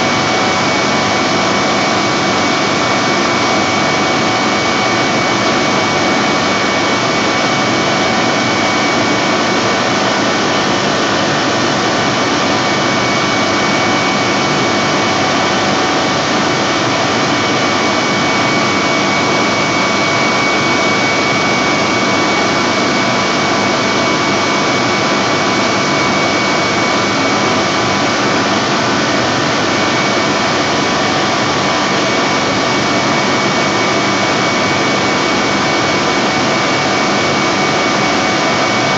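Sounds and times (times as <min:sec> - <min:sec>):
turbo compressor running: 0:00.0 - 0:38.9.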